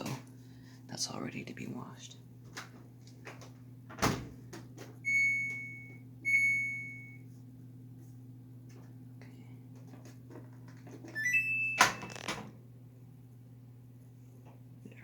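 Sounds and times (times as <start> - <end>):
washing machine beeping: 5.0 - 7.3, 11.2 - 12.3.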